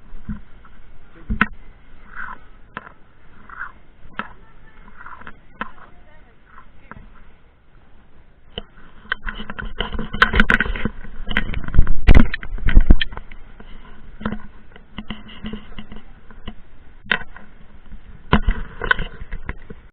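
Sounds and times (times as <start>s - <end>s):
scraping or rubbing noises: 0.0s - 7.3s, 8.5s - 19.9s
irregular clicks and knocks: 8.5s - 19.9s.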